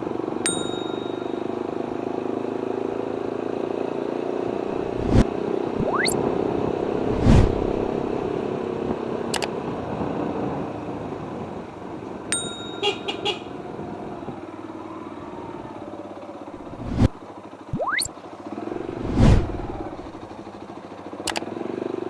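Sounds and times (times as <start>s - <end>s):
motorcycle engine running: 13.5s - 22.0s.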